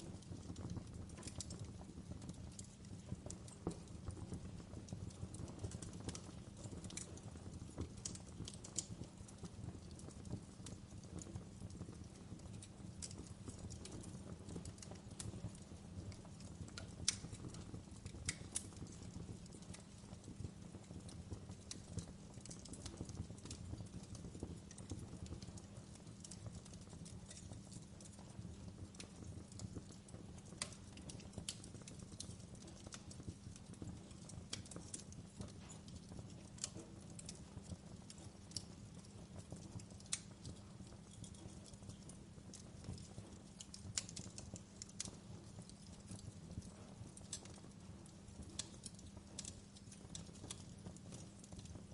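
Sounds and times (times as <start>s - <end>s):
fire crackling and popping: 0.0s - 51.9s
wood fire rumbling: 0.0s - 51.9s.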